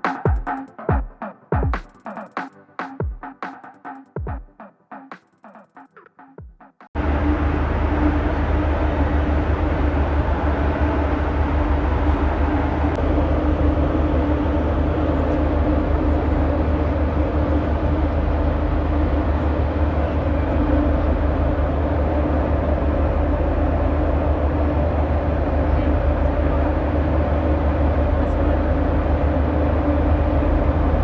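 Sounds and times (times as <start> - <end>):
ship engines droning: 7.0 - 31.0.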